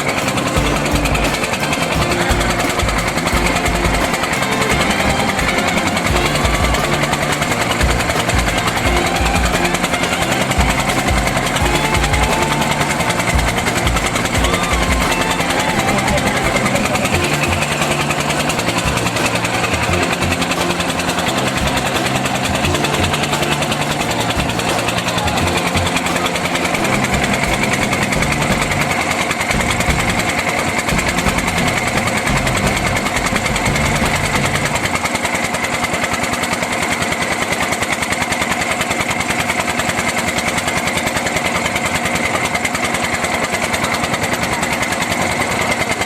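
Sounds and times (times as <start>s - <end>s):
high whine: 0.0s - 35.6s
small engine running: 0.0s - 46.0s.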